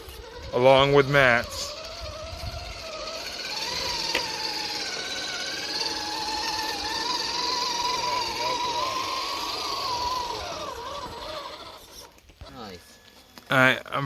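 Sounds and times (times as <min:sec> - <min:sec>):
small electric motor whine: 0:00.0 - 0:14.0.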